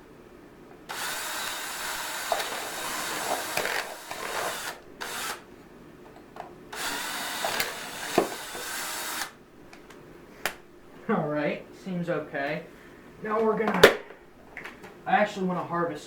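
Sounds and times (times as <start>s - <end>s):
handheld power tool running: 0.9s - 5.4s, 6.7s - 9.4s.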